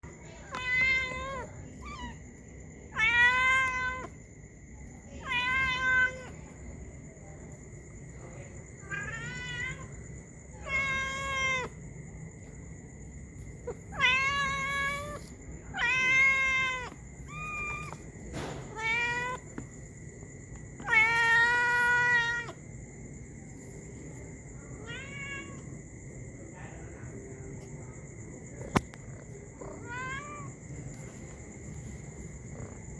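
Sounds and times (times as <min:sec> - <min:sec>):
cat meowing: 0:00.4 - 0:02.2, 0:02.9 - 0:04.2, 0:05.2 - 0:06.4, 0:08.8 - 0:09.9, 0:10.6 - 0:11.8, 0:13.7 - 0:19.5, 0:20.8 - 0:22.6, 0:24.8 - 0:25.7, 0:29.6 - 0:30.5.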